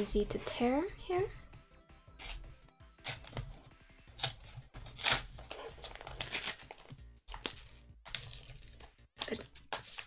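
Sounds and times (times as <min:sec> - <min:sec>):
packaging tearing: 0:04.2 - 0:08.8.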